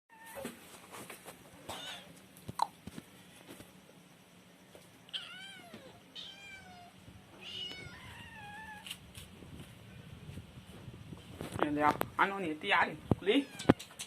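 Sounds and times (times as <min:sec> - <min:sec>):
cat meowing: 0:05.1 - 0:08.9, 0:13.3 - 0:14.0.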